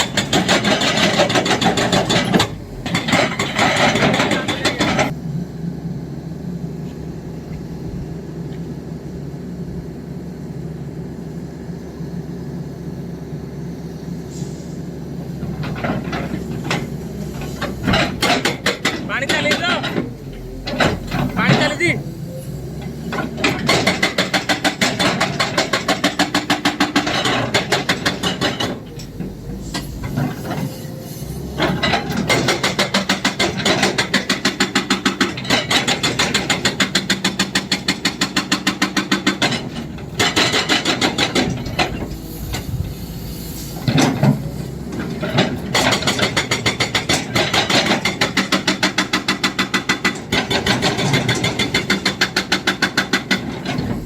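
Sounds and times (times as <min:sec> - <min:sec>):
hydraulic breaker hammering: 0:15.7 - 0:22.0, 0:23.1 - 0:30.8, 0:31.6 - 0:42.8, 0:45.2 - 0:54.0.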